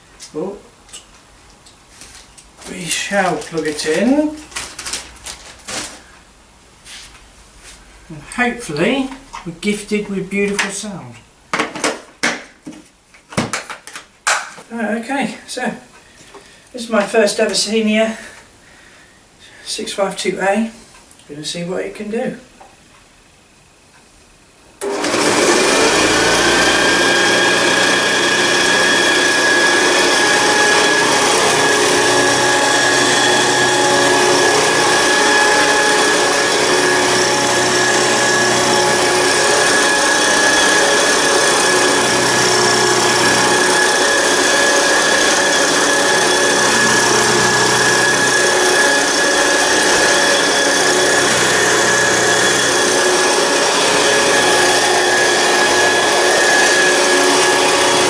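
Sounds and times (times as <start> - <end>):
upright vacuum cleaner whine: 2.1 - 11.7, 24.7 - 58.0
vacuum cleaner vibrating: 2.6 - 11.4, 24.8 - 58.0.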